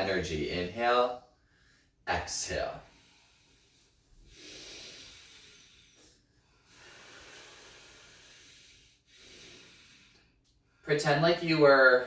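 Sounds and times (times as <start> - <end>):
person breathing deeply: 2.8 - 10.9.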